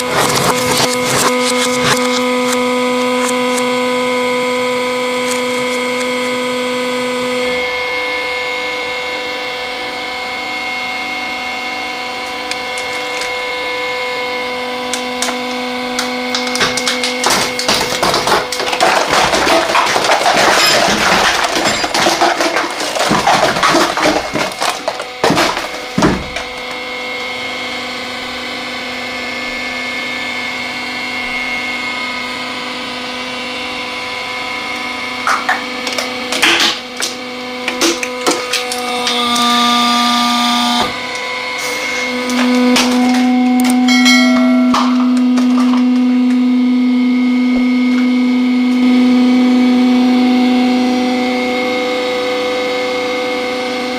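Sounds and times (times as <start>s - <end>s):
object crackling and splintering: 0.0s - 3.6s, 16.0s - 26.8s
hydraulic press humming: 0.0s - 28.3s, 34.1s - 52.9s.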